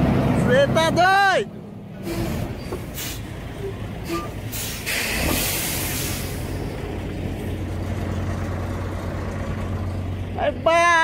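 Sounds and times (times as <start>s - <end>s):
truck engine running: 0.0s - 11.0s
hiss: 4.5s - 6.5s.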